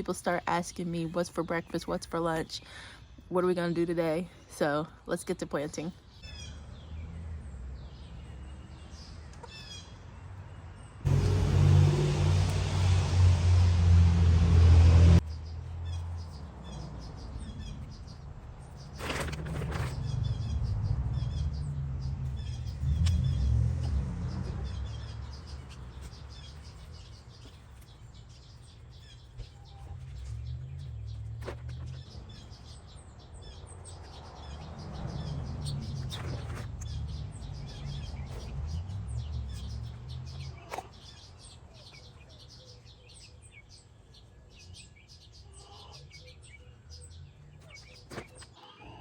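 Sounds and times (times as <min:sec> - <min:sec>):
small birds chirping: 0:00.0 - 0:11.8, 0:15.2 - 0:49.0
low rumbling: 0:11.0 - 0:27.4, 0:28.1 - 0:33.6.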